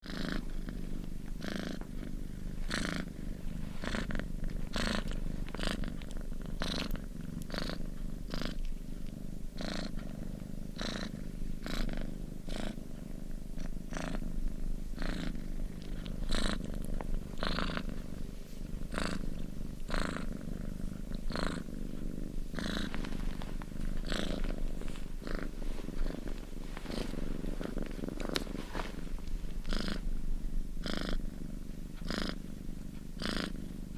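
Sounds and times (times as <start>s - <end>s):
cat purring: 0.0s - 33.9s.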